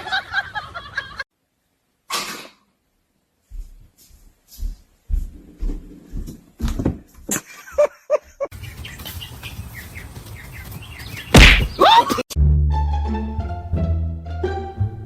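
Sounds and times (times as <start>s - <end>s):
knocks and bumps: 5.6s - 7.4s
pet loud falling cry: 11.3s - 12.2s.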